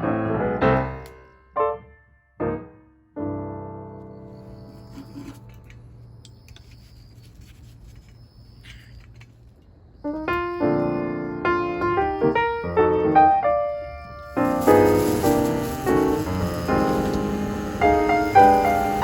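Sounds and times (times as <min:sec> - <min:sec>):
piano melody: 0:00.0 - 0:06.2, 0:10.0 - 0:19.0.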